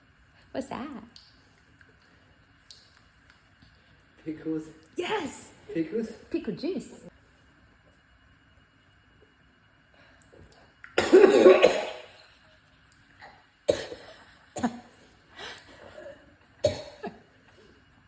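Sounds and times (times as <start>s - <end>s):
person coughing: 11.0s - 12.2s, 13.7s - 14.9s, 16.0s - 17.2s.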